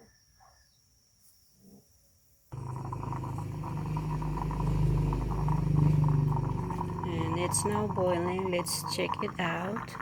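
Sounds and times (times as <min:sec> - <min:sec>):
moka pot gurgling and sputtering: 0:02.5 - 0:10.0.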